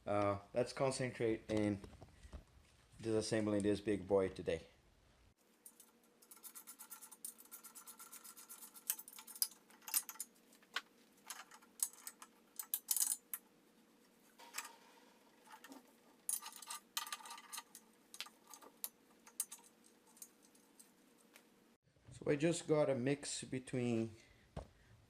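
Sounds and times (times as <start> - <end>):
metal clinks and scrapes: 5.6 - 10.4, 11.2 - 13.4, 14.4 - 21.3.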